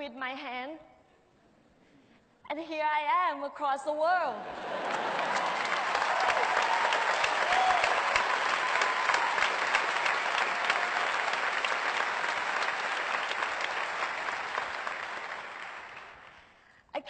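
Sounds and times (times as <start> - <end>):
audience applauding: 4.6 - 16.5
cheers: 4.7 - 16.3.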